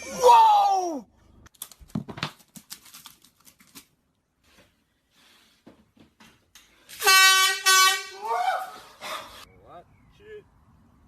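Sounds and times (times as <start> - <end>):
air horn blast: 7.0 - 8.3.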